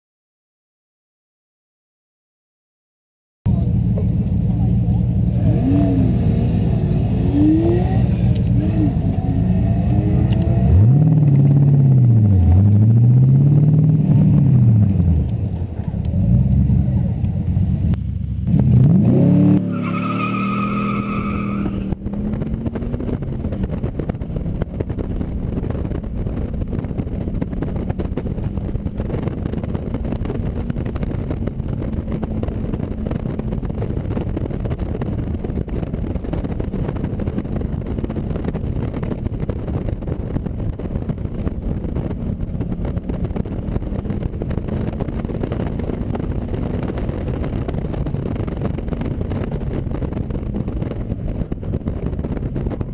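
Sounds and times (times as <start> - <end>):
car engine revving hard: 5.3 - 15.3, 18.5 - 23.2.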